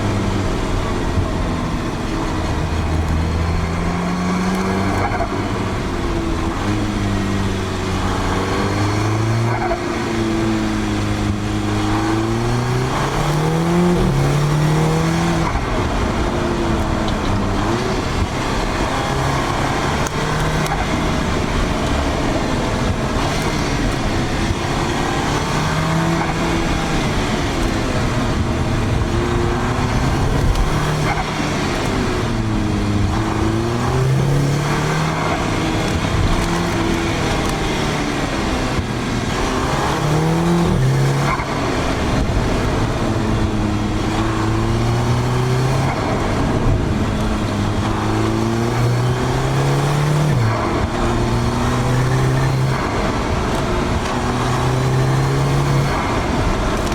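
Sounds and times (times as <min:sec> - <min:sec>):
car engine revving: 0:00.0 - 0:56.9
road noise: 0:00.0 - 0:56.9.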